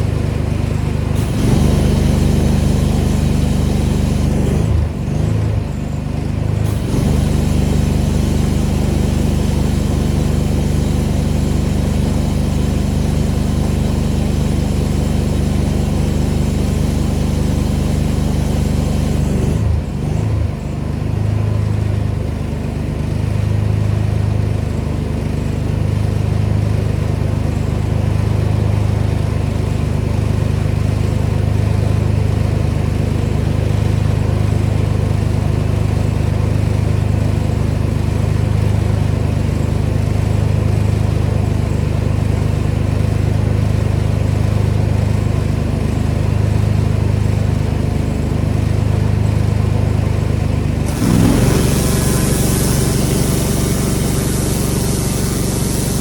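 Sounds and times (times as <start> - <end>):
pressure washer engine running: 0.0 - 20.7, 30.4 - 56.0
water spray hiss: 1.2 - 4.6, 6.6 - 19.3, 50.9 - 56.0.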